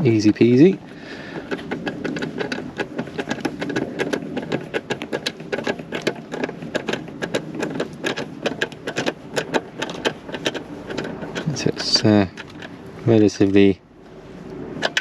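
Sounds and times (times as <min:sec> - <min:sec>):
hand ratchet clicking: 0:01.2 - 0:12.8.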